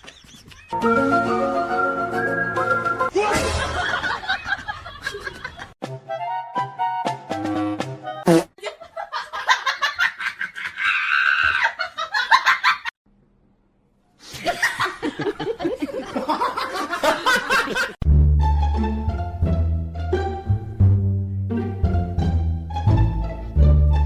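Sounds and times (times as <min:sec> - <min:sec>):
people laughing hard: 0:03.2 - 0:05.8, 0:08.6 - 0:12.9, 0:14.3 - 0:18.0.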